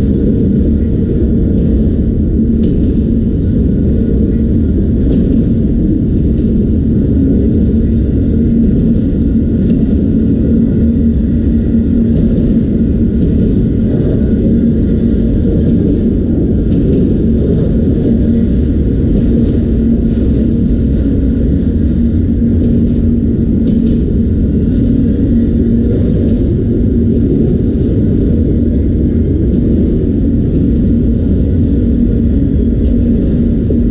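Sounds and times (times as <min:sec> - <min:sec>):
freight train rumbling past: 0:00.0 - 0:33.9.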